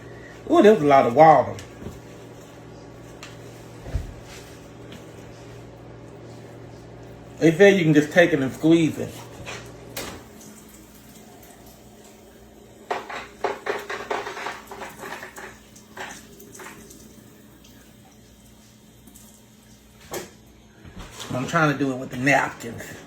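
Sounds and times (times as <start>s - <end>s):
water splashing into a sink: 9.6s - 20.5s.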